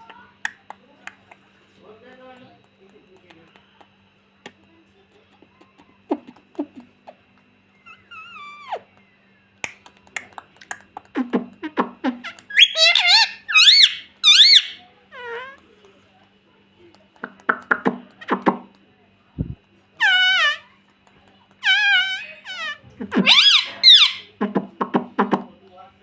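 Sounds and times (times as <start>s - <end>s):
parrot whistled squawks: 12.5s - 14.8s, 20.0s - 20.6s, 21.6s - 24.3s.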